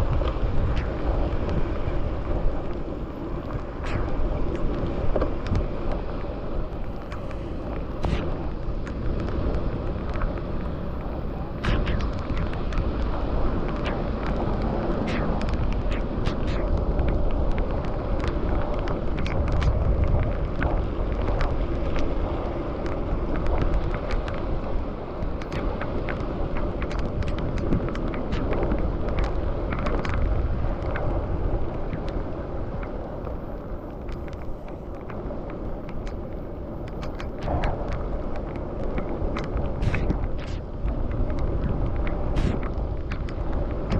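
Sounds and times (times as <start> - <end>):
wind rushing over microphone: 0.0 - 43.9.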